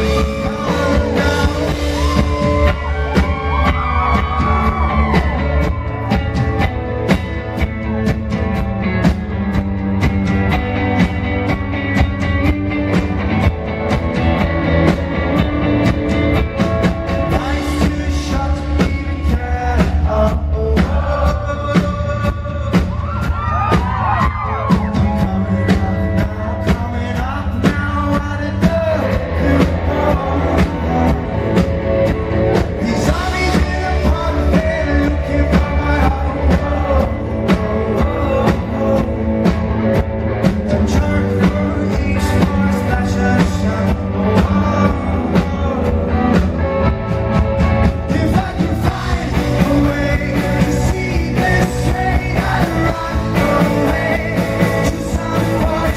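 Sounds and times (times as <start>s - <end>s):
male lead vocal: 0.0s - 7.4s, 16.8s - 55.9s
rock band playing live: 0.0s - 55.9s.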